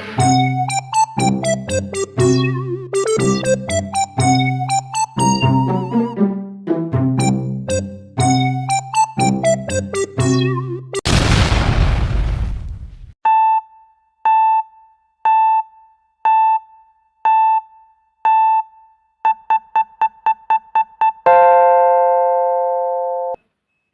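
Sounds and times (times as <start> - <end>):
electronic countdown beeps: 0.2 - 6.2, 7.2 - 11.0, 13.3 - 21.7.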